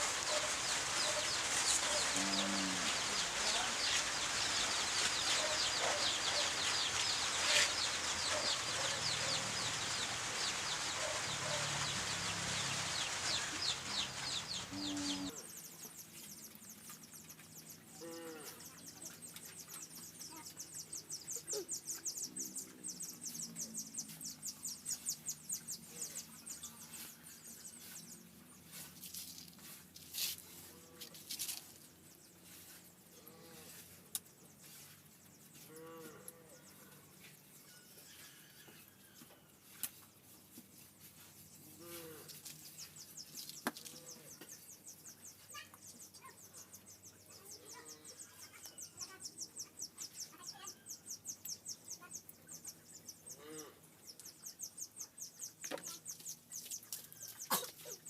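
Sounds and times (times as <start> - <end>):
loud steady hiss: 0.0 - 15.3.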